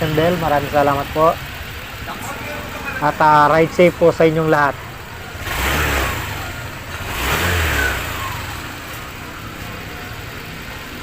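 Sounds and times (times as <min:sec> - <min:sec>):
scooter engine revving and idling: 0:00.0 - 0:11.0.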